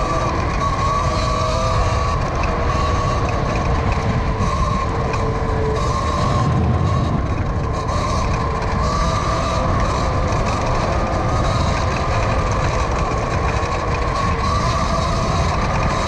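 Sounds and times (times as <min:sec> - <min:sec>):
electric motor whine: 0:00.0 - 0:16.0
rumbling wind: 0:00.0 - 0:16.0.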